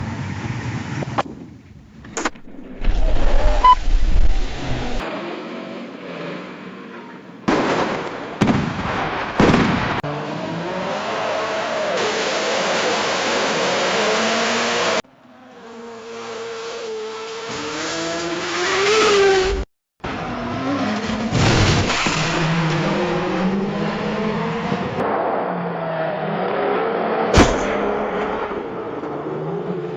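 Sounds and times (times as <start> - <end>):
tyres skidding and squealing: 2.4 - 7.4, 10.0 - 29.9
metal crash impacts: 27.3 - 28.2.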